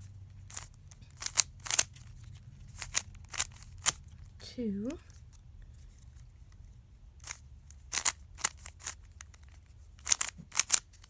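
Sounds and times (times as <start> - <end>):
puzzle cube plastic clicks: 0.5 - 4.3, 7.2 - 11.0.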